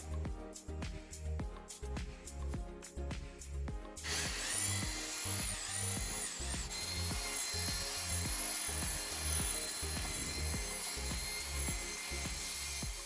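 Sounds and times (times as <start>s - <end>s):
background music with steady beat: 0.0s - 13.0s
power tool whining: 4.0s - 13.0s.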